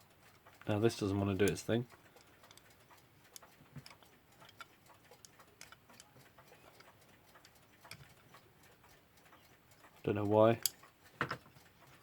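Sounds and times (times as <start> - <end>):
small metal parts clicking: 0.4 - 8.4.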